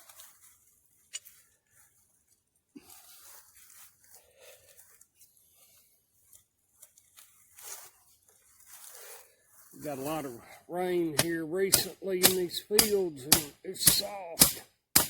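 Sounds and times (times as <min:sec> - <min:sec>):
scraping and rustling: 0:00.0 - 0:10.6.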